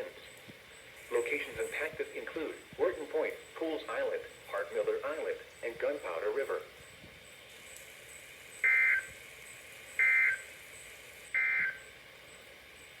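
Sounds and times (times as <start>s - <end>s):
faint radio hiss: 0.0s - 13.0s
buzzy data bursts: 7.5s - 11.9s.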